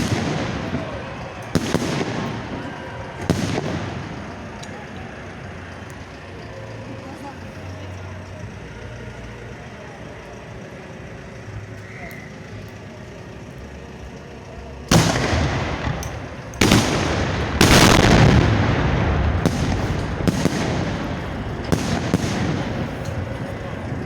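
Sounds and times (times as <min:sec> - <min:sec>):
fireworks bangs: 0:00.0 - 0:06.2, 0:14.9 - 0:24.0
fireworks crackling: 0:00.0 - 0:24.0.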